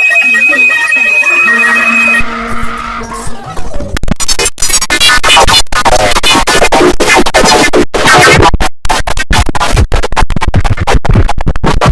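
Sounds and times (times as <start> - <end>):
distorted pitch-warped computer sound: 0.0 - 4.1.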